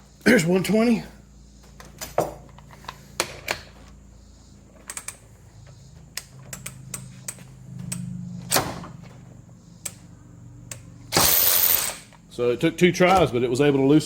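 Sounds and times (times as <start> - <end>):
tool handling clicks: 6.1 - 8.1
cordless ratchet humming: 10.7 - 12.0.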